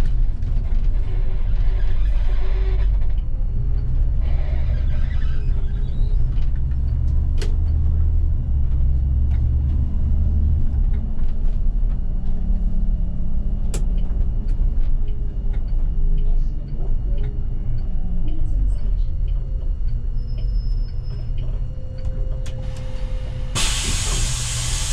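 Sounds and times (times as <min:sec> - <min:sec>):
bus engine and road rumble: 0:00.0 - 0:24.9
brief hiss: 0:22.7 - 0:24.9.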